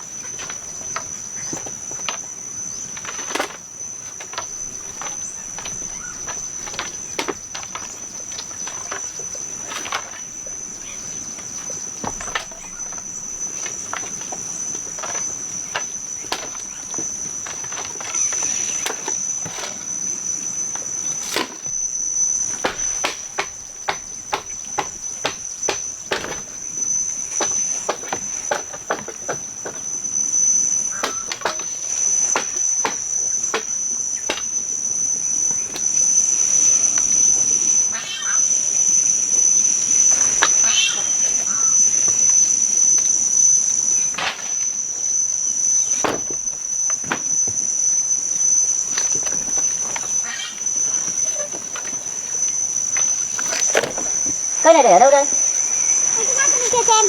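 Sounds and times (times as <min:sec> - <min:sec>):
high-pitched insect drone: 0:00.0 - 0:57.0
sharp taps and knocks: 0:22.5 - 0:26.5.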